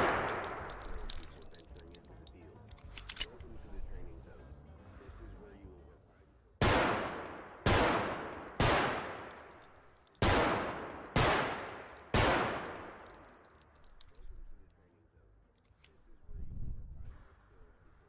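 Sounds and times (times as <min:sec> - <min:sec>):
pistol shots echoing: 0:00.0 - 0:01.3, 0:06.6 - 0:13.4.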